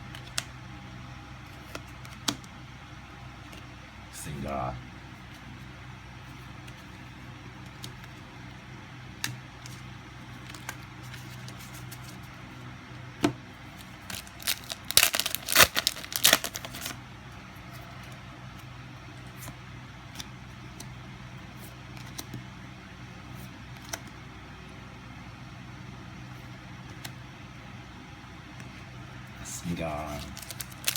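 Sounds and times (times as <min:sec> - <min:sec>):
foil wrapper crinkling and tearing: 0:13.8 - 0:17.0, 0:30.1 - 0:30.9.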